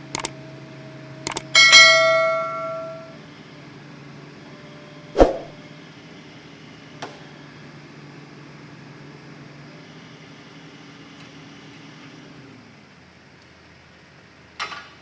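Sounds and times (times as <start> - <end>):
ringing steel clang: 1.6 - 3.2.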